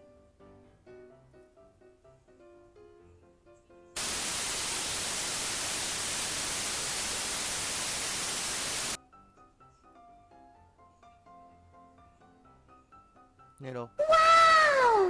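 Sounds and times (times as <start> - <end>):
loud static hiss: 4.0 - 9.0
soft piano music: 9.0 - 14.0.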